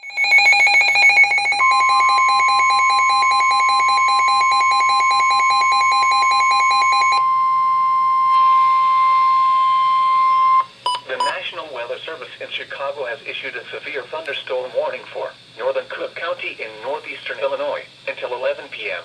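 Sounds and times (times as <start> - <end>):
rapid alarm beeps: 0.0 - 11.4
steady warning alarm tone: 0.0 - 11.4.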